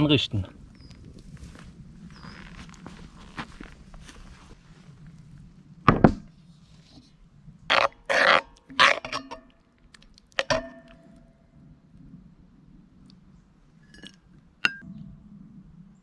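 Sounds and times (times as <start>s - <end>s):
heavy thump: 5.9s - 6.3s
metal ladle scraping cookware: 7.7s - 9.6s, 10.4s - 11.2s.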